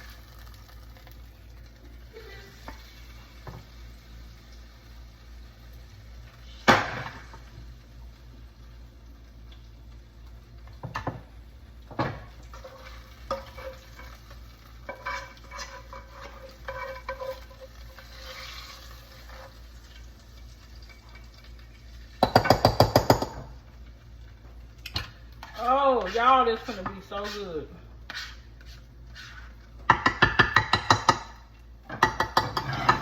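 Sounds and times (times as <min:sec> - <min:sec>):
spoon stirring and scraping: 0:12.5 - 0:19.7, 0:24.4 - 0:33.0.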